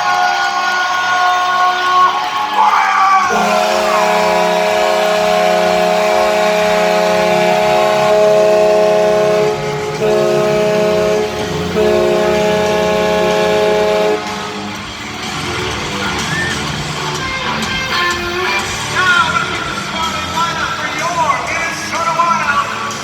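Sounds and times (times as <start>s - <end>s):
goal horn blaring: 3.2s - 15.0s.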